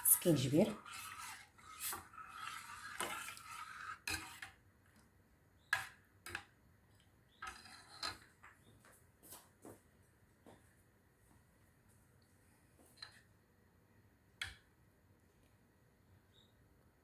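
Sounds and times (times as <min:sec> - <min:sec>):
spoon stirring in saucepan: 0:00.0 - 0:08.6.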